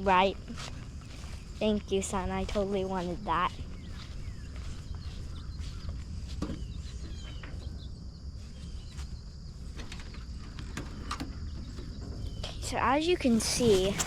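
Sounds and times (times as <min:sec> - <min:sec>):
faint bird chirps: 0:03.0 - 0:14.0.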